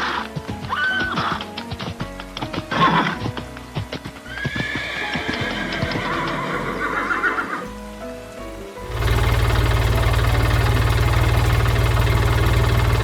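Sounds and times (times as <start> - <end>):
horse hooves clip-clopping: 0.0 - 7.5
horse whinny: 4.3 - 7.6.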